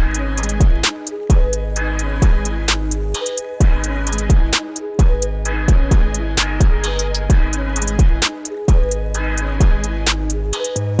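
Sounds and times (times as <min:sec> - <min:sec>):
kick drum: 0:00.0 - 0:02.6, 0:03.6 - 0:09.0, 0:09.6 - 0:10.0
hi-hats: 0:00.0 - 0:11.0.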